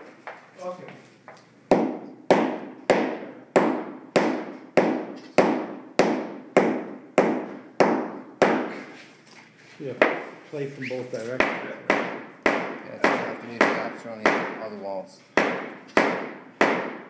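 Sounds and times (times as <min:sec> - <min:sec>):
hammering on hardwood flooring: 0:01.7 - 0:08.9, 0:10.0 - 0:10.3, 0:11.4 - 0:14.8, 0:15.4 - 0:17.0.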